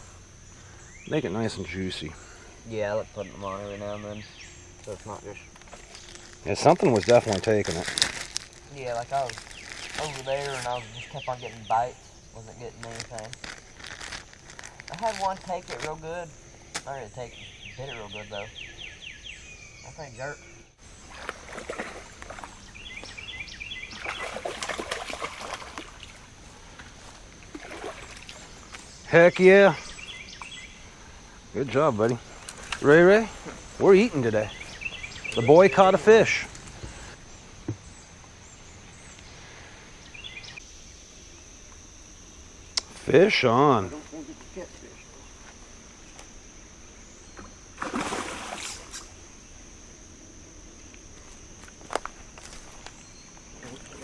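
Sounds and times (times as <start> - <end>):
high-pitched insect buzz: 0.0 - 54.0
bird chirping: 0.4 - 25.6, 27.6 - 41.5
water splashing and trickling: 20.9 - 29.7, 47.8 - 49.2, 53.5 - 54.0.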